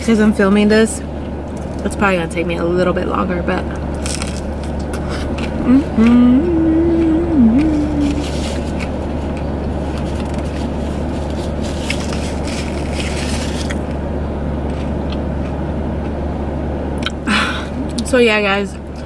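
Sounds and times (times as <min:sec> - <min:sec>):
car cabin hum and air rush: 0:00.0 - 0:15.2
woman singing notes: 0:05.7 - 0:08.6.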